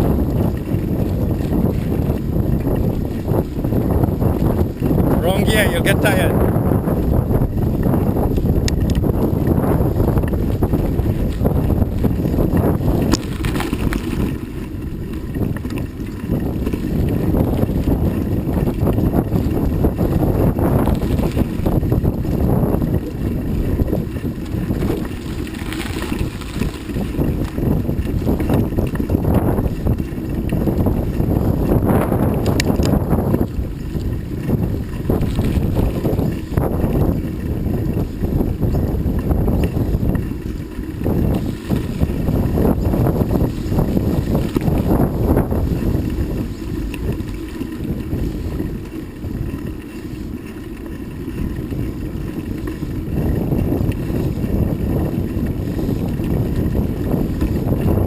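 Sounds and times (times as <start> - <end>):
wind buffeting microphone: 0.0 - 58.0.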